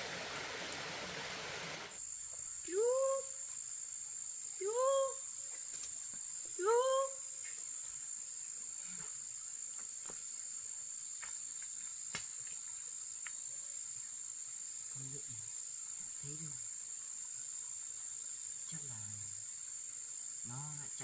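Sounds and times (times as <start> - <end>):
insects droning: 0.0 - 21.0.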